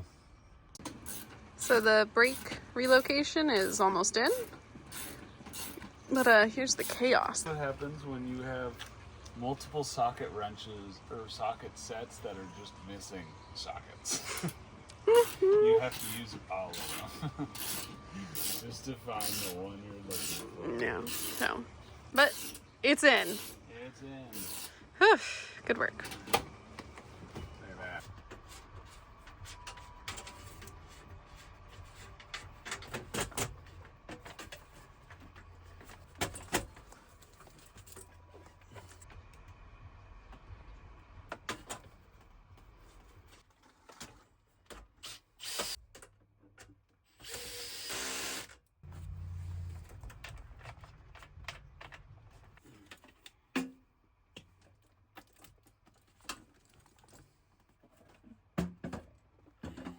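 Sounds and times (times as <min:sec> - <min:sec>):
hand tools and metal clicking: 0:00.8 - 0:07.1, 0:14.2 - 0:21.6, 0:22.2 - 0:23.6, 0:24.3 - 0:24.8.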